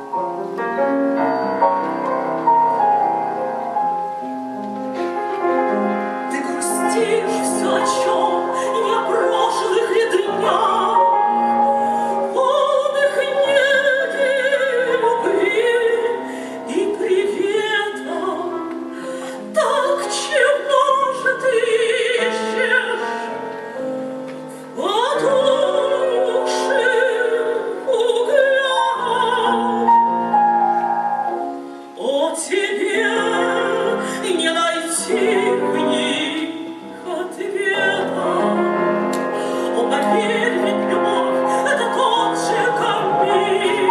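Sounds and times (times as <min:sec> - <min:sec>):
piano accompaniment: 0:00.0 - 0:43.9
woman singing classical song: 0:03.0 - 0:43.9.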